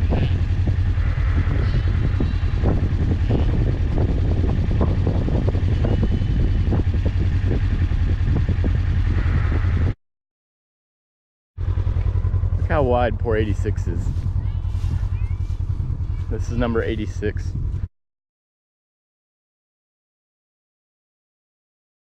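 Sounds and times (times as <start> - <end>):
tractor engine rumbling: 0.0 - 10.0, 11.6 - 17.9.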